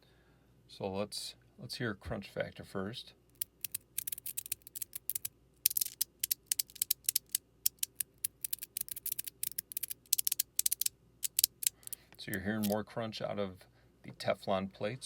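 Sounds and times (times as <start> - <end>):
metal sliders clicking and scraping: 3.4 - 12.0.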